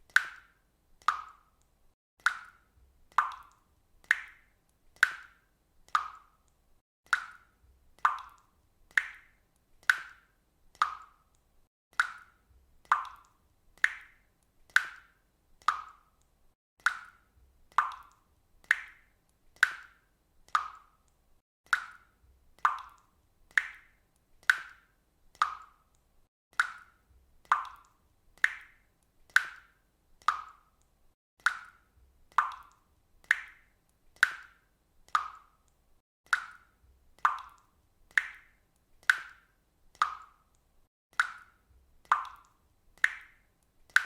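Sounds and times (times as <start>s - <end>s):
water dripping: 0.0s - 44.0s.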